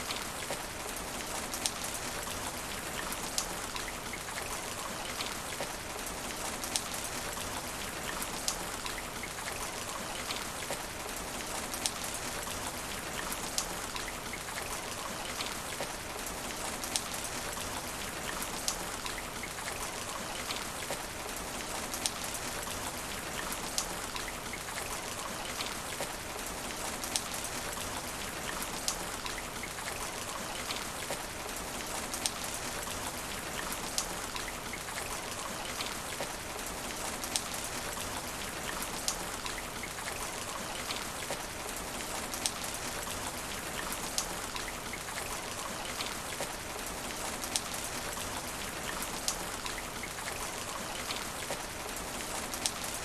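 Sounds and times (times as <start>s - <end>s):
rain on asphalt: 0.0s - 53.0s.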